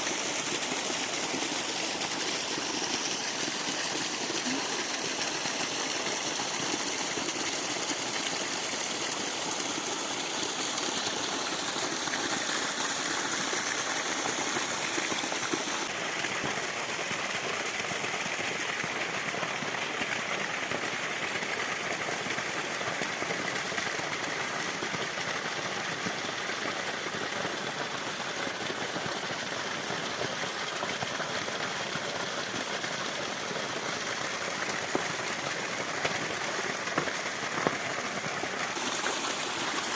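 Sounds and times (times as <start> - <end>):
waterfall rushing: 0.0 - 16.0, 33.2 - 39.9.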